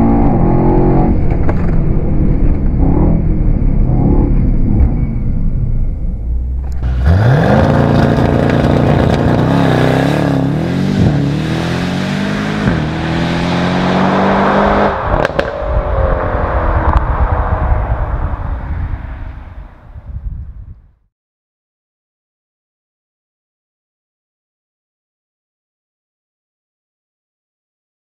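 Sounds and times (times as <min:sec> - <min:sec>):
car engine revving: 0:00.0 - 0:05.5, 0:06.2 - 0:19.8
road and wind noise: 0:00.0 - 0:21.1.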